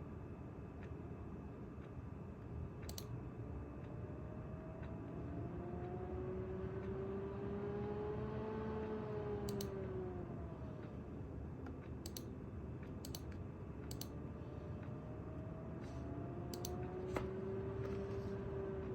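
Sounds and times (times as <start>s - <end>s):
sharp clicks: 2.8s - 3.2s, 9.5s - 9.8s, 12.0s - 12.3s, 13.0s - 14.2s, 16.5s - 16.9s.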